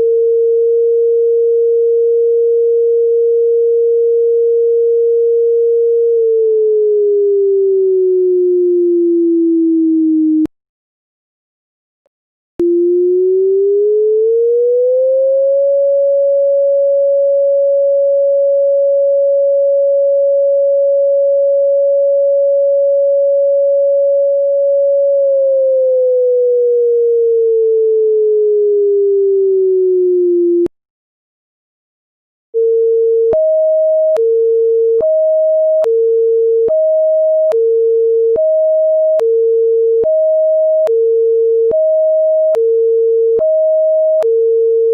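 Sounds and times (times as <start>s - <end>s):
two-tone hi-lo siren: 0.0s - 10.5s, 12.6s - 30.7s, 32.6s - 44.9s
synthesized siren tone: 5.9s - 10.5s, 12.6s - 30.7s.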